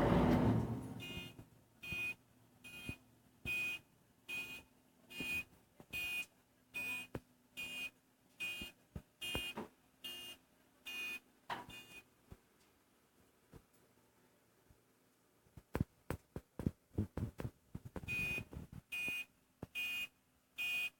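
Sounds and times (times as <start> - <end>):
reversing alarm beeping: 0.5 - 5.4, 6.0 - 12.0, 19.0 - 20.9.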